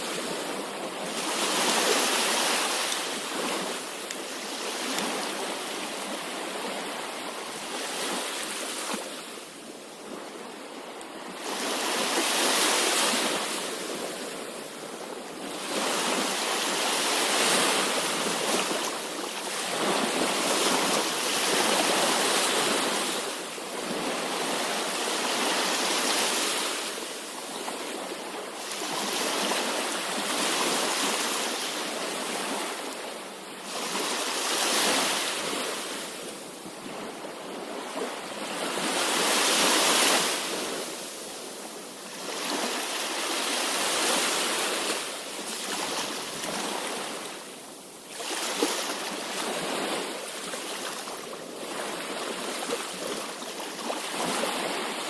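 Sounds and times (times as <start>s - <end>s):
sea waves surging: 0.0s - 10.6s, 11.2s - 27.4s, 37.8s - 55.0s.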